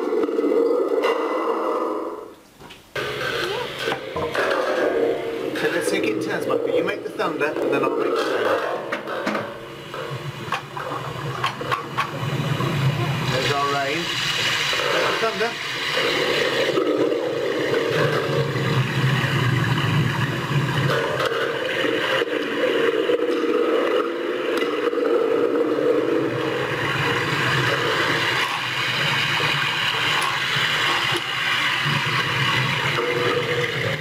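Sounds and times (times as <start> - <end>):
rushing water sound effect: 9.6 - 34.0.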